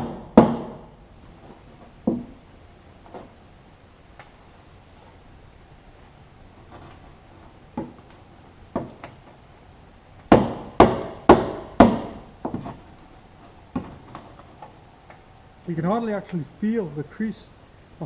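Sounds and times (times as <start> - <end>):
loud hammer strikes on metal: 0.0 - 0.9, 10.3 - 12.2.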